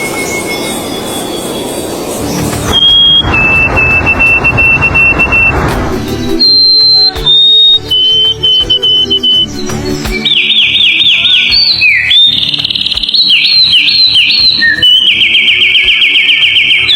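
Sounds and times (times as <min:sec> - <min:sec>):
bird whistling long notes: 0:00.0 - 0:16.9.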